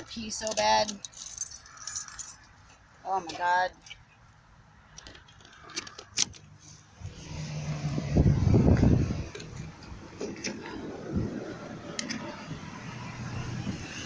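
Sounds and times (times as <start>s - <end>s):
truck engine revving: 6.6s - 14.0s.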